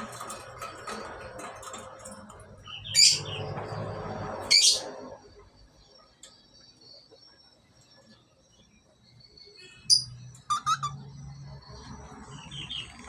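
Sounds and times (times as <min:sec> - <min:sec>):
parrot shrill calls: 0:10.5 - 0:11.0.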